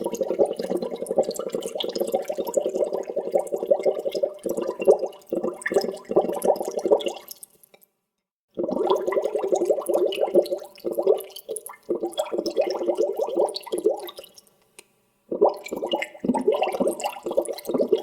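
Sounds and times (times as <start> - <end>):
water bubbling: 0.0 - 7.4, 8.6 - 14.3, 15.3 - 18.0.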